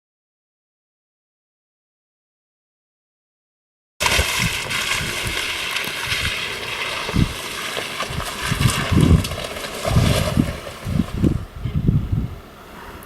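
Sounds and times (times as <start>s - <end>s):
vehicle splashing through mud: 4.0s - 11.5s.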